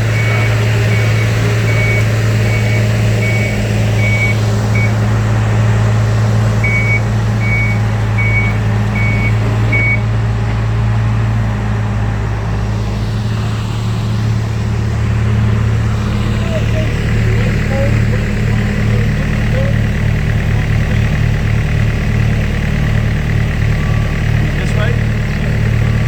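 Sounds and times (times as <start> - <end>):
backup alarm beeping: 0.0 - 5.0, 6.6 - 10.1
diesel machinery running: 0.0 - 26.0.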